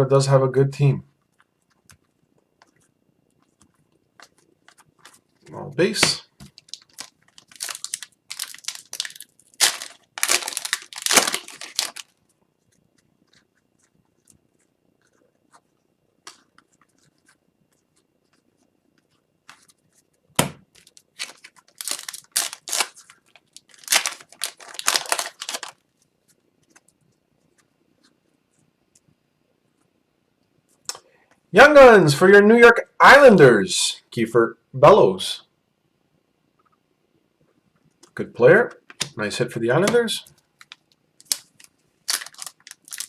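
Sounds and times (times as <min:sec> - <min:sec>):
foil wrappers tearing and crinkling: 0:06.4 - 0:12.2, 0:20.7 - 0:25.8, 0:40.6 - 0:43.0.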